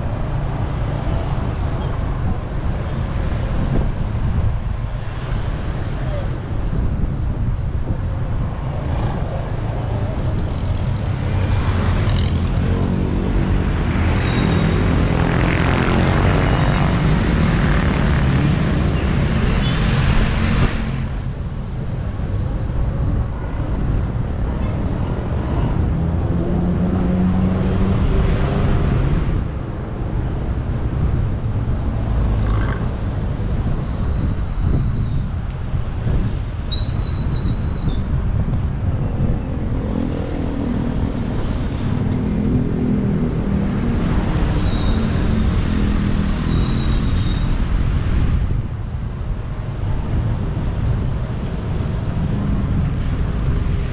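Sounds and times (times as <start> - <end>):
wind rushing over microphone: 0.0 - 53.9
passing vehicle engines droning: 8.4 - 34.3, 38.8 - 53.9.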